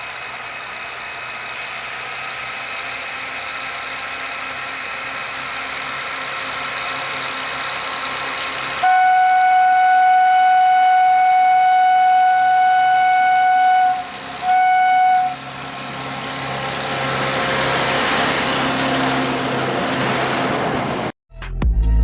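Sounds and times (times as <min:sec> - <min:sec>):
locomotive engine and train running: 0:00.0 - 0:21.2
locomotive horn blasts: 0:08.8 - 0:15.5.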